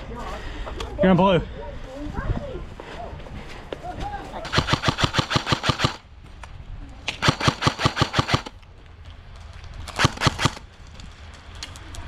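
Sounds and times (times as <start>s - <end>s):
airsoft rifle firing bursts: 4.5s - 6.0s, 7.2s - 8.6s, 10.0s - 10.6s.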